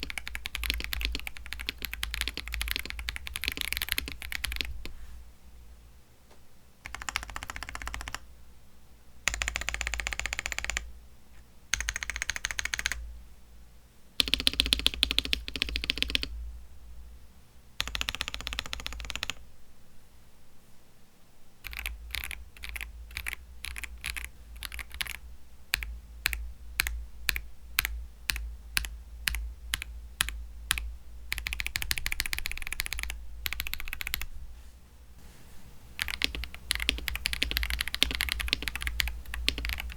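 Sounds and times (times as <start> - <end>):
mechanical keyboard typing: 0.0 - 4.9, 6.8 - 8.2, 9.3 - 10.9, 11.7 - 13.0, 14.2 - 16.3, 17.8 - 19.4, 21.6 - 34.3, 36.0 - 39.9.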